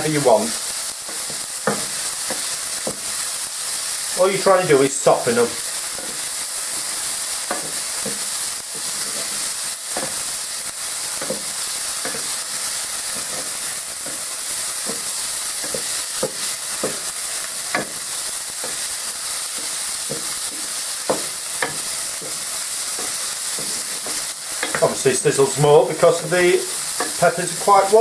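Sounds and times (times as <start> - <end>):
peppers sizzling in oil: 0.0 - 28.0
utensil knocking and scraping pan: 1.1 - 3.2, 7.5 - 10.2, 11.2 - 17.1, 17.7 - 18.0, 19.6 - 25.0.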